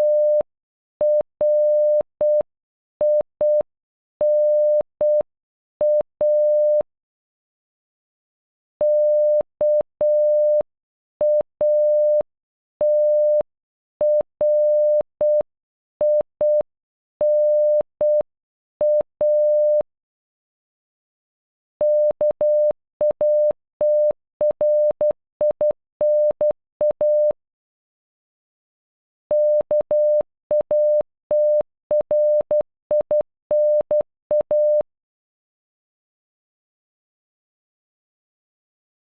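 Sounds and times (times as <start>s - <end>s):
morse code beeps: 0.0s - 0.4s, 1.0s - 2.4s, 5.8s - 6.8s, 18.8s - 19.8s, 21.8s - 27.4s, 29.3s - 34.9s.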